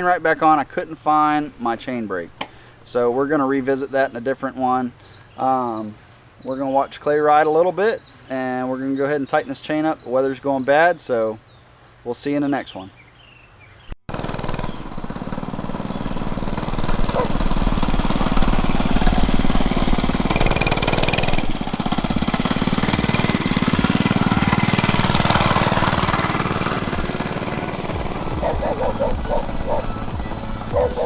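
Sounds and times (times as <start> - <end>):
mini bike engine running: 14.1 - 31.0.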